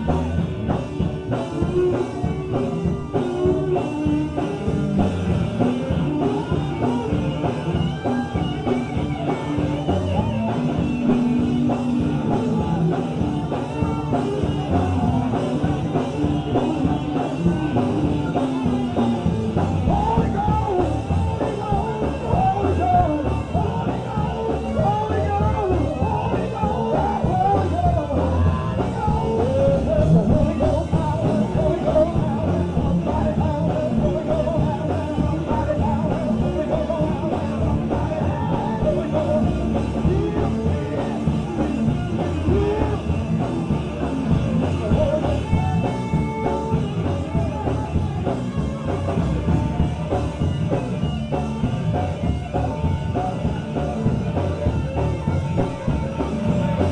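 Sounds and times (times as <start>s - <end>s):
gospel band with drum kit: 0.0s - 56.9s
voices singing along: 0.0s - 56.9s.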